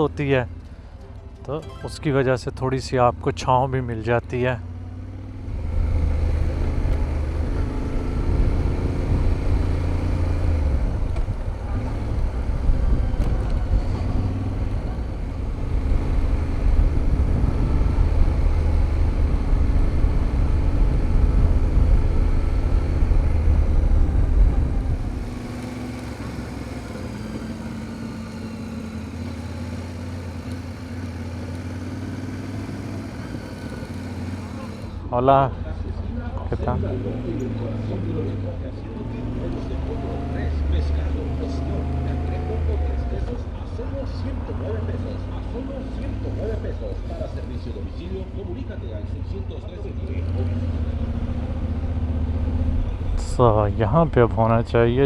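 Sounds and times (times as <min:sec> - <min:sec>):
motorcycle engine rumble: 0:00.0 - 0:55.0
wind noise: 0:10.9 - 0:25.4.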